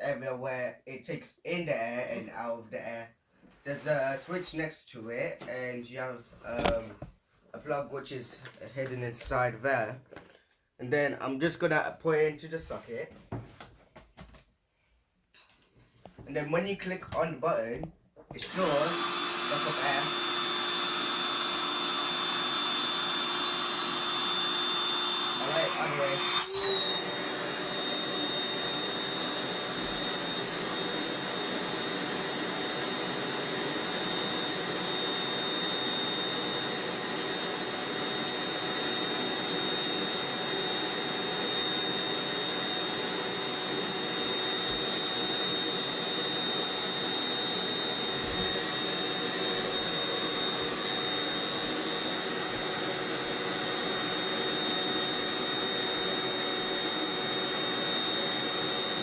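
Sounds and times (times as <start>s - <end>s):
electric air pump whining: 18.3s - 59.0s.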